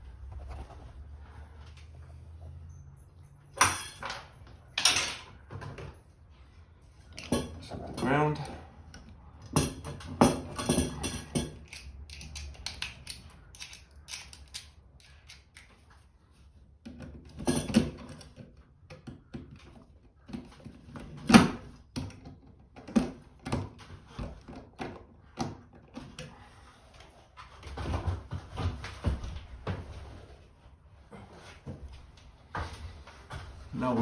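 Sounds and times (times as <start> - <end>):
wiring and metal hardware handled: 7.1 - 8.6, 9.5 - 15.9.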